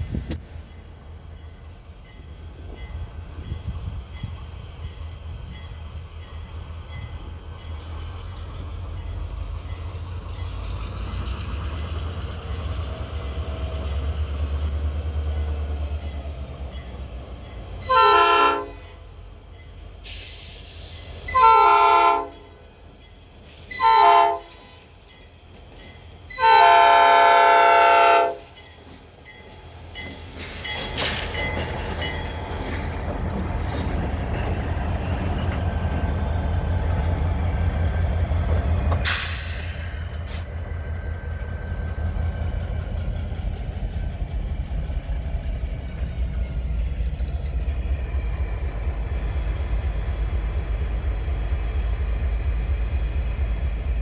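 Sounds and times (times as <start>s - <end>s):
track and wheel noise: 0.0s - 17.8s, 28.2s - 54.0s
diesel locomotive engine rumble: 0.0s - 54.0s
train air horn: 17.8s - 18.9s, 21.3s - 22.4s, 23.7s - 24.8s, 26.3s - 28.5s.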